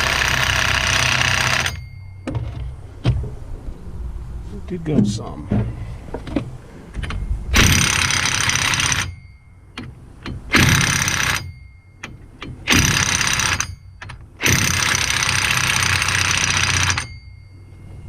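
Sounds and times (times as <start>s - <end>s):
impact wrench bursts: 0.0s - 1.9s, 7.5s - 17.2s.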